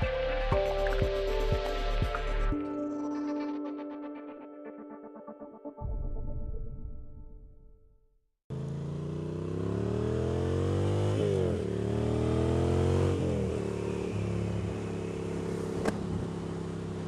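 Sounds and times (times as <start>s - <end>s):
motorcycle engine accelerating: 8.5s - 17.0s.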